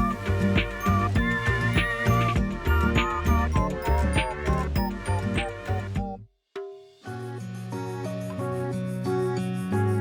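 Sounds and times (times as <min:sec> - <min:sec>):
upbeat background music: 0:00.0 - 0:06.2.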